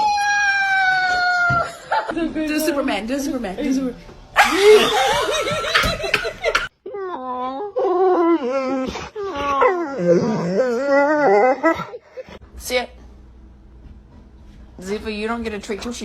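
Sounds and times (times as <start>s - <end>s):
hearty laughter: 4.4s - 6.7s.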